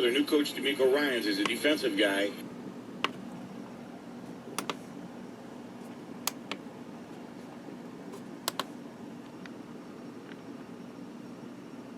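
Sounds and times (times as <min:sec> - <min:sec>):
steady low hum: 0:00.0 - 0:11.9
button clicks: 0:04.6 - 0:04.8, 0:06.3 - 0:06.6, 0:08.5 - 0:08.7.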